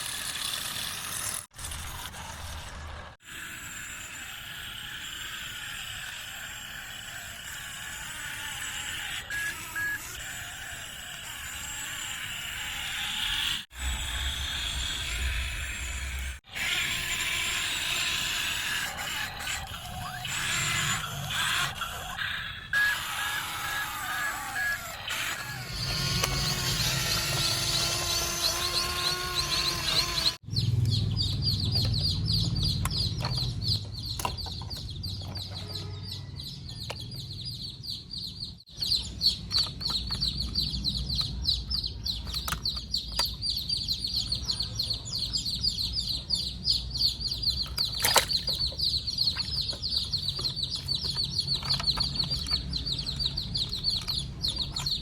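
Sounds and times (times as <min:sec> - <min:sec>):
rapid high-pitched chirping: 0:05.1 - 0:35.4, 0:37.2 - 0:55.0.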